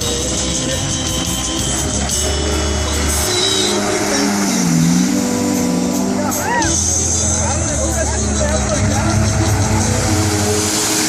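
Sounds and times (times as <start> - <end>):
music with heavy bass: 0.0 - 11.0.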